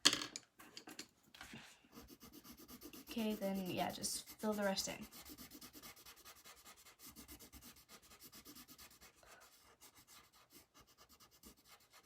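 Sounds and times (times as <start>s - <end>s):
coloured pencil scratching on paper: 1.6s - 12.0s.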